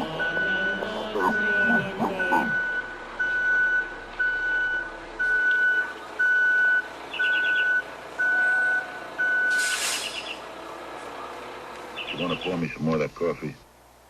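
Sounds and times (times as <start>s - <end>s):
high electronic beeps: 0.1s - 10.3s
hiss burst: 9.5s - 10.4s.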